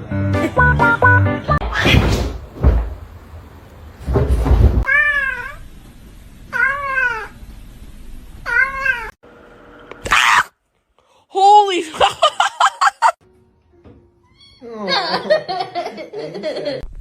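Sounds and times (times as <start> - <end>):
cat meowing: 4.9 - 5.6, 6.5 - 7.4, 8.5 - 9.1.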